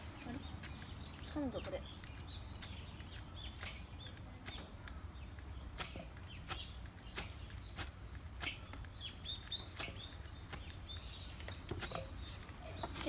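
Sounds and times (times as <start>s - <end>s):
faint bird chirps: 0.0s - 13.0s
fire-starter rod scraping: 5.8s - 13.0s.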